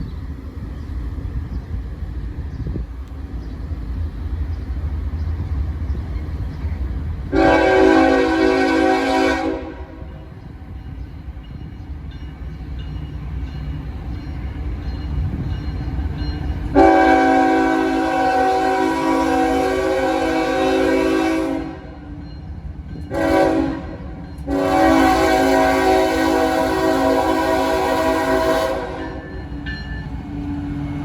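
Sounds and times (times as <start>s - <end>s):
train rumbling: 0.0s - 31.0s
train air horn blast: 7.3s - 10.2s, 16.8s - 22.0s, 23.1s - 29.4s.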